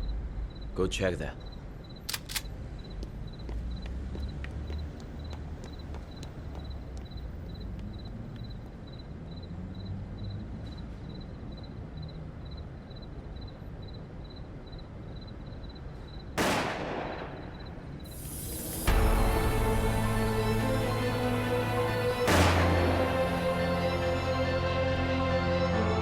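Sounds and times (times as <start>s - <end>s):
low steady rumble: 0.0s - 2.0s
faint high ticking beep: 0.0s - 16.3s
loud ringing bang: 16.4s - 24.3s
high hiss: 18.1s - 24.4s.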